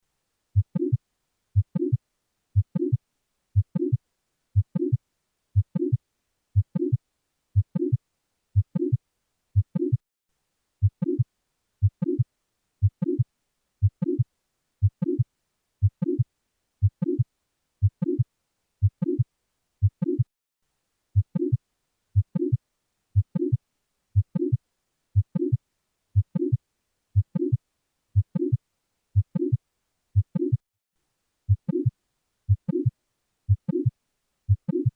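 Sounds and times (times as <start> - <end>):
heartbeat with murmur: 0.6 - 1.0, 1.6 - 2.0, 2.6 - 3.0, 3.6 - 4.0, 4.6 - 5.0, 5.6 - 6.0, 6.6 - 7.0, 8.6 - 9.0, 9.6 - 10.0, 10.8 - 11.2, 11.8 - 12.2, 12.8 - 13.2, 13.8 - 14.2, 14.8 - 15.2, 15.8 - 16.2, 16.8 - 17.2, 17.8 - 18.2, 18.8 - 19.2, 19.8 - 20.3, 21.2 - 21.6, 22.2 - 22.6, 23.2 - 23.6, 26.2 - 26.6, 28.2 - 28.6, 29.2 - 29.6, 30.2 - 30.6, 31.5 - 31.9, 32.5 - 32.9, 33.5 - 33.9, 34.5 - 34.9.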